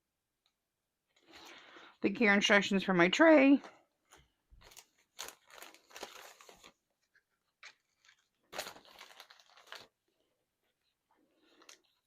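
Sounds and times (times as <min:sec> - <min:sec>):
paper packaging rustling: 0:03.6 - 0:10.1, 0:11.4 - 0:12.0.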